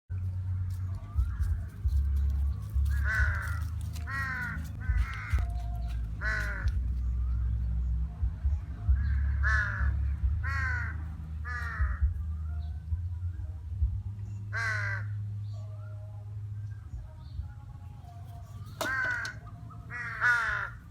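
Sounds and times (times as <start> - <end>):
steady low hum: 0.1 - 20.9
crows cawing: 2.9 - 5.5, 6.2 - 6.8, 9.0 - 12.1, 14.5 - 15.2, 18.8 - 20.9.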